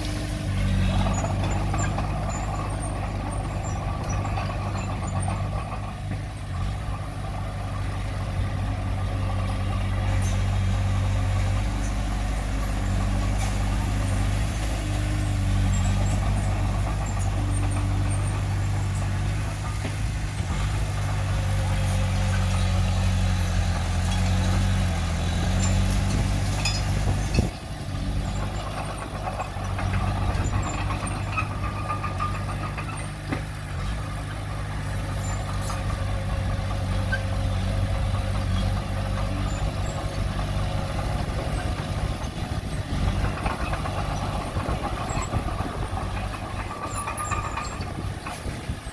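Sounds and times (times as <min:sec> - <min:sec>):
heavy diesel engine running: 0:00.0 - 0:48.9.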